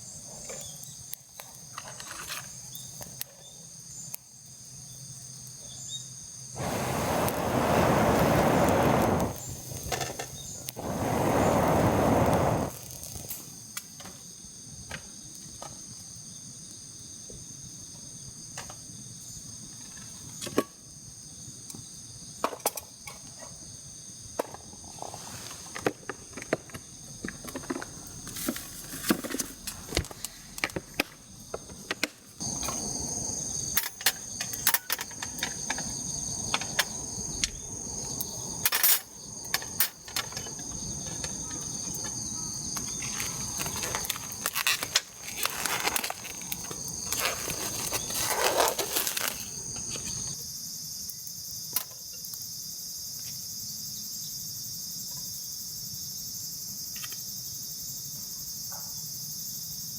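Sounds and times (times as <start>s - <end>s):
insects chirping: 0.0s - 59.9s
loud rushing noise: 6.6s - 10.0s, 10.8s - 12.7s.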